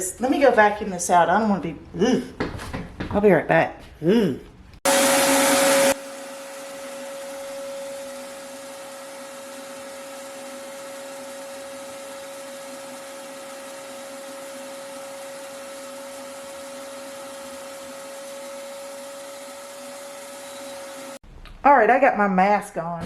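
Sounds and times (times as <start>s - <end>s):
vacuum cleaner running: 4.8s - 21.2s.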